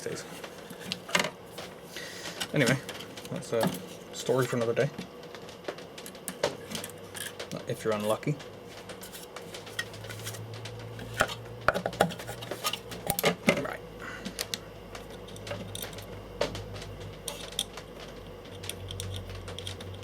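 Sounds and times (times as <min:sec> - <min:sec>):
tools and small parts clattering: 0:05.5 - 0:08.2, 0:08.8 - 0:13.7, 0:14.4 - 0:20.0.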